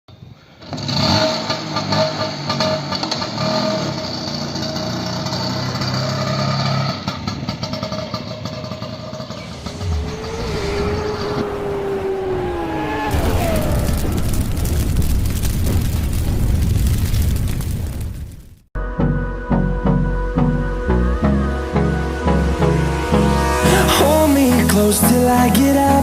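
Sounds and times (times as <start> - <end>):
scooter engine revving: 0.6 - 14.3.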